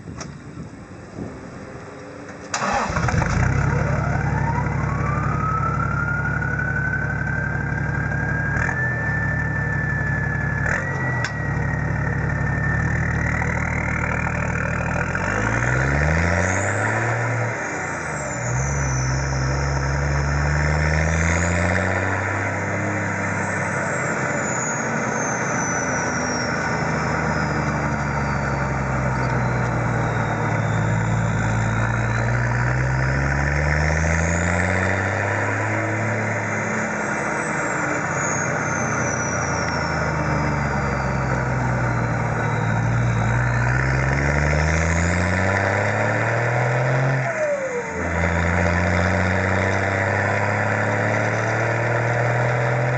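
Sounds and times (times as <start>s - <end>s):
diesel engine revving: 0.0s - 52.9s
road noise: 0.0s - 52.9s
turbo whistle: 22.0s - 33.3s, 36.6s - 44.4s.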